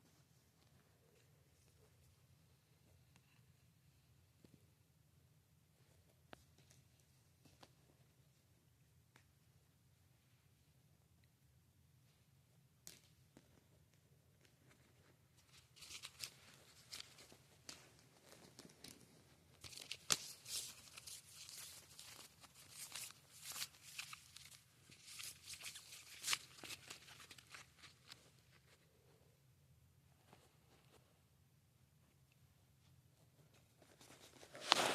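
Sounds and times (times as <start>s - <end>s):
plastic and card rustling: 14.6s - 28.8s, 33.8s - 34.9s.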